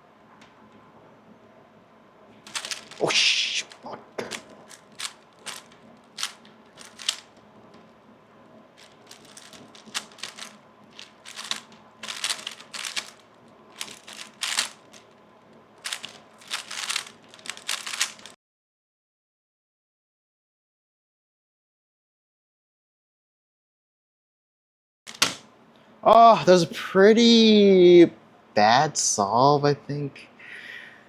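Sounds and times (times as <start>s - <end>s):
puzzle cube plastic layers clicking: 2.5s - 7.4s, 8.8s - 15.1s, 15.8s - 18.4s, 25.1s - 25.4s.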